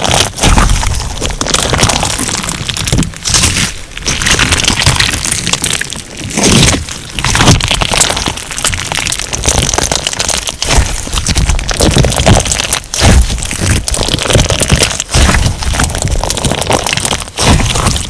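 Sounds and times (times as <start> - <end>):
slime crackling and popping: 0.0 - 18.0.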